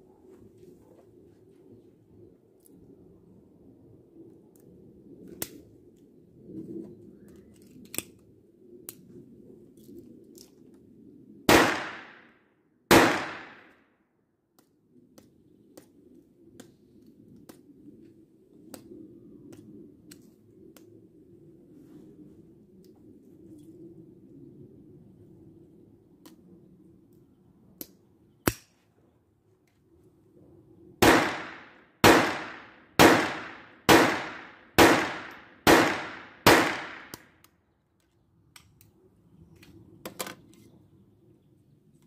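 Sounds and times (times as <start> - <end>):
pistol shots echoing: 11.5 - 12.2, 12.9 - 13.7, 31.0 - 37.2.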